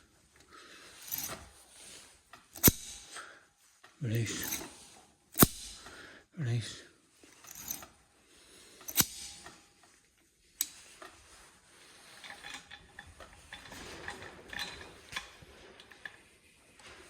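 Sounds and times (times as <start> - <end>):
pliers clicking and rattling: 1.0 - 1.5, 2.4 - 3.3, 4.2 - 6.0, 7.4 - 7.9, 8.8 - 9.6.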